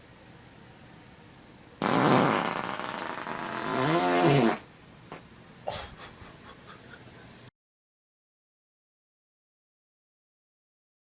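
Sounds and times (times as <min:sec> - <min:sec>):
long loud fart: 0:01.8 - 0:05.2.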